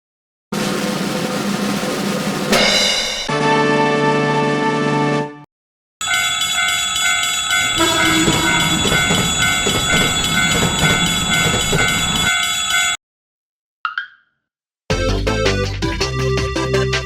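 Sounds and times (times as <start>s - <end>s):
railroad crossing bell ringing: 6.0s - 13.0s
train wheels clattering over rails: 6.8s - 13.0s.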